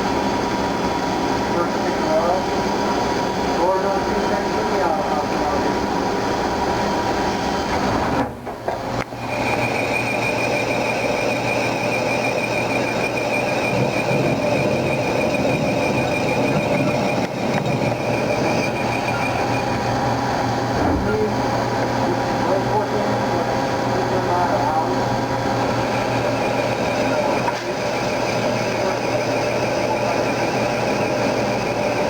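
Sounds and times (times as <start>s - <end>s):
lathe machining metal: 9.1s - 32.0s
steady high whistle: 9.2s - 19.9s.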